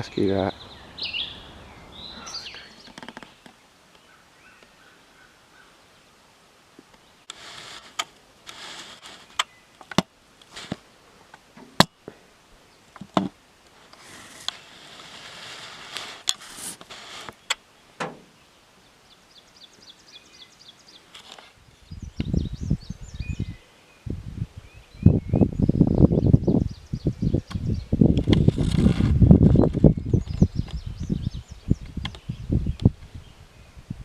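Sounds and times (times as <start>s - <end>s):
small bird singing: 0.0s - 6.1s, 17.3s - 33.9s
rustling: 6.8s - 12.3s, 12.9s - 18.4s, 21.0s - 21.6s, 28.2s - 30.6s.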